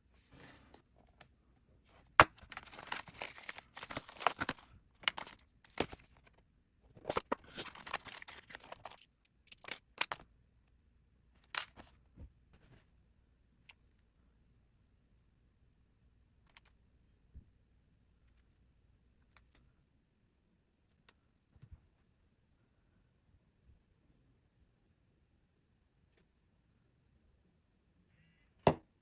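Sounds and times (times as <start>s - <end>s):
plastic wrap crinkling and tearing: 2.3s - 6.0s, 7.0s - 9.0s.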